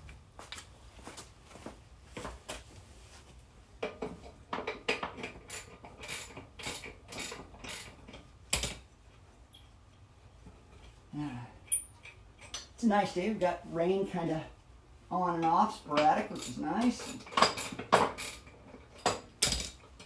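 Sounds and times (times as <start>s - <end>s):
metal tools clinking: 11.6s - 12.7s.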